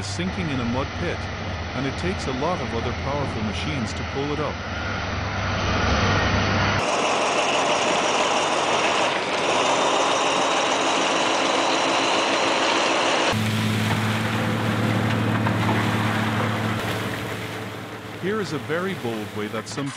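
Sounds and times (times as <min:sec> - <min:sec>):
heavy machinery running: 0:00.0 - 0:19.9.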